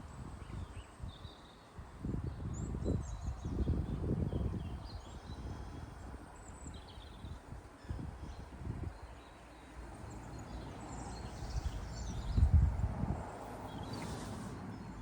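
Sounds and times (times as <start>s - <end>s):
songbirds chirping: 0.0s - 15.0s
low rumbling buffets: 9.8s - 15.0s.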